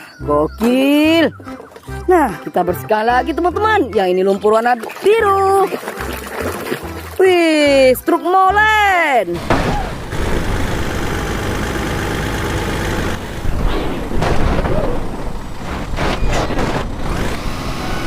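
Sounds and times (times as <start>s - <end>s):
diesel engine running: 9.3s - 18.0s.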